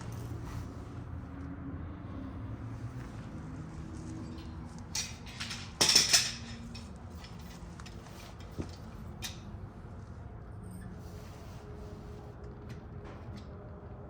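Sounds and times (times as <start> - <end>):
metal tools clinking: 4.1 - 9.4.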